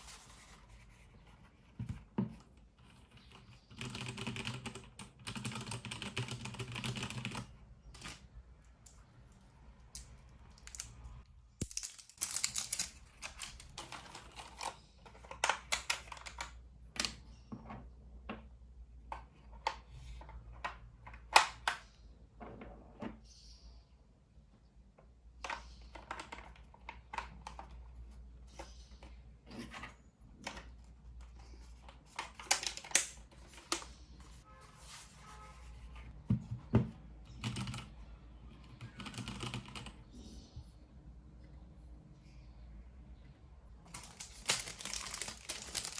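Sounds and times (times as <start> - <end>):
mechanical keyboard typing: 3.4 - 8.2, 37.3 - 38.0, 38.6 - 40.1
handling rustle: 43.9 - 45.9.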